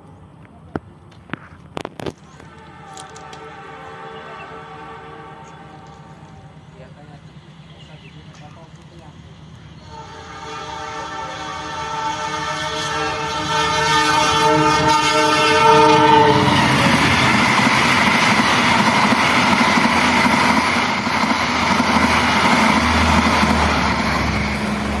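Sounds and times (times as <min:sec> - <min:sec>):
train passing at speed: 0:00.0 - 0:25.0
train horn blast: 0:02.3 - 0:06.6, 0:09.8 - 0:18.7.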